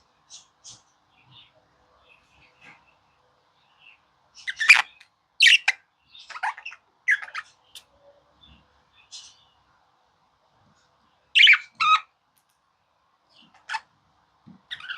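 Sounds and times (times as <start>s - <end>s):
budgerigar chirping and squawking: 4.4s - 7.6s, 11.4s - 12.1s, 13.4s - 13.9s.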